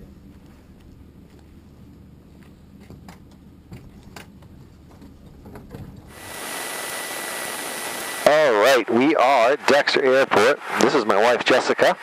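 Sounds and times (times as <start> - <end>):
faint low hum: 0.0 - 6.1
electronic hiss with high whine: 6.1 - 12.0.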